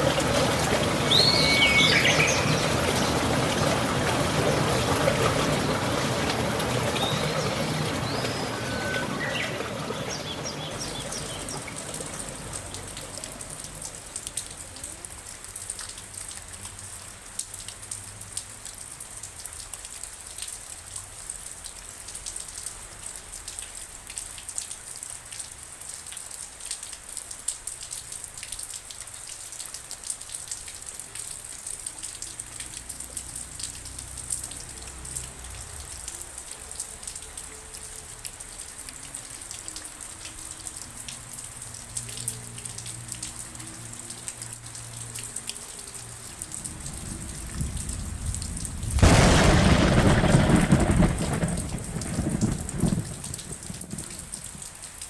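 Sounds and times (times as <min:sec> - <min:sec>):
raindrops ticking: 0:00.0 - 0:09.4, 0:10.2 - 0:55.0
steady rain falling: 0:00.0 - 0:55.0
thunder rumbling: 0:10.7 - 0:14.7, 0:46.2 - 0:54.8
loud thunderclap: 0:46.6 - 0:54.6.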